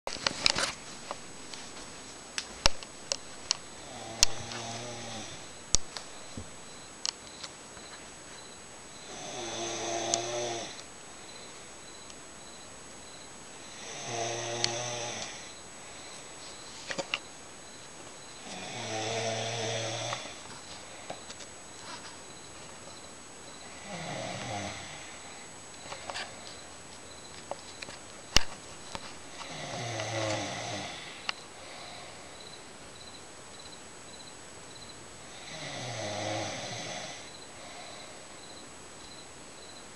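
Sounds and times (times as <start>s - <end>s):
woman snoring: 3.7s - 5.6s, 9.0s - 10.8s, 13.6s - 15.6s, 18.4s - 20.5s, 23.6s - 25.5s, 29.3s - 32.5s, 35.2s - 38.4s.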